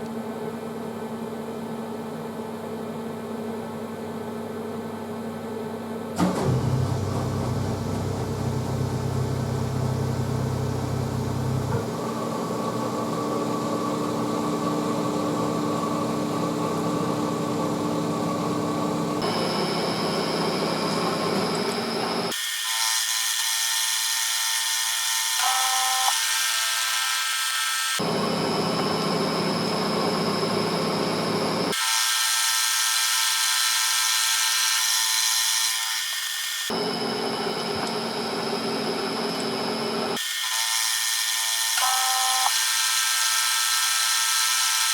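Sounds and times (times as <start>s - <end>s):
metal lathe whirring: 18.4s - 22.5s.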